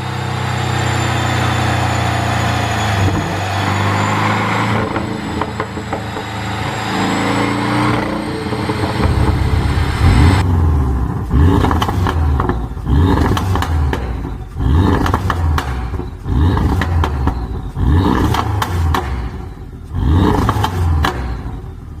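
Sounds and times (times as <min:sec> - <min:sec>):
engine revving blips: 0:00.0 - 0:10.6
exhaust pops and crackles: 0:11.6 - 0:17.6.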